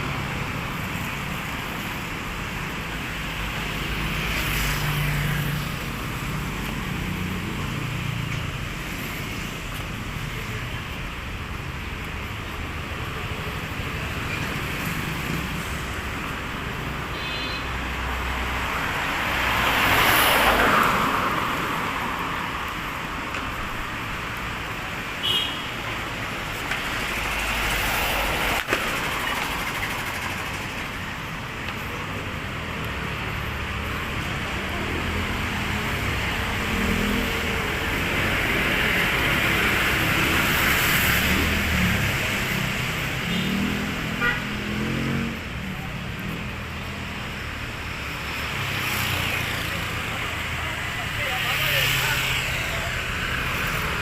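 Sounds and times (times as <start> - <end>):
vehicles passing: 0.0 - 54.0.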